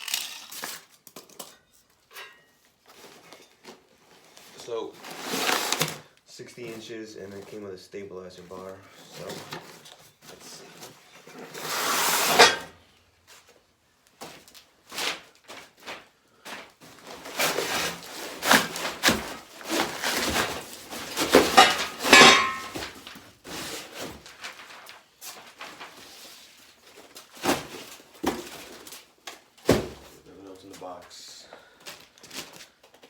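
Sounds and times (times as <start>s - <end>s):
cardboard scraping and rustling: 2.8s - 6.0s, 8.5s - 12.7s, 14.2s - 31.0s
metal parts knocking: 21.5s - 22.8s.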